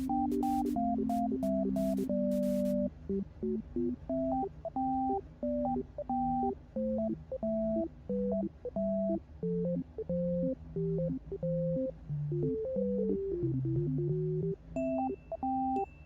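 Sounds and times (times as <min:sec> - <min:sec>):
beeping electronic tune: 0:00.0 - 0:11.9.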